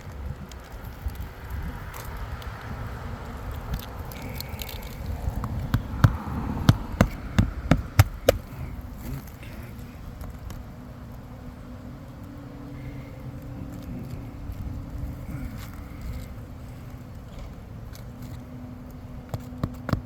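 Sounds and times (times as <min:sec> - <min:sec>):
low outdoor rumble: 0:00.0 - 0:20.0
hammer striking nails: 0:05.4 - 0:08.5.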